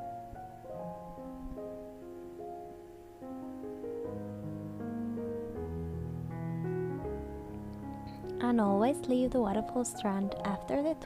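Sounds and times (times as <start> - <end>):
soft piano music: 0.0 - 11.0.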